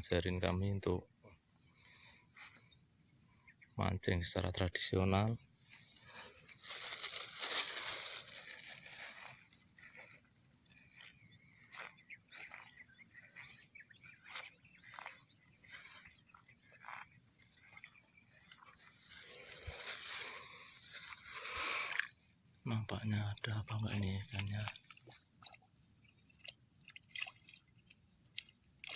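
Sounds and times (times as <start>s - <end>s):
insects chirring: 0.0s - 28.9s
soft rustles: 5.7s - 12.8s.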